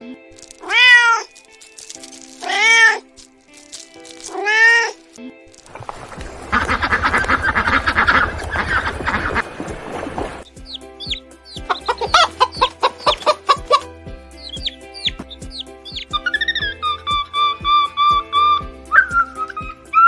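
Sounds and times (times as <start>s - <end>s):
cat meowing: 0.5s - 1.4s, 2.4s - 3.1s, 4.3s - 5.0s
rapidly pulsing cat call: 0.5s - 1.4s, 2.4s - 3.1s, 14.5s - 20.0s.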